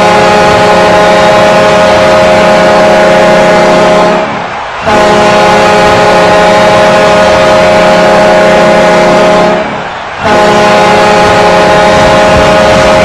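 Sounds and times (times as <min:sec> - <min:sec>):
low multi-toned goal horn: 0:00.0 - 0:13.0.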